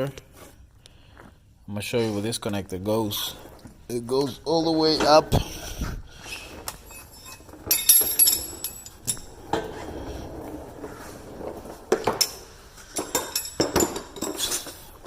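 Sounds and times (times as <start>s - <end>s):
metal parts clinking: 6.7s - 9.4s, 12.2s - 15.0s.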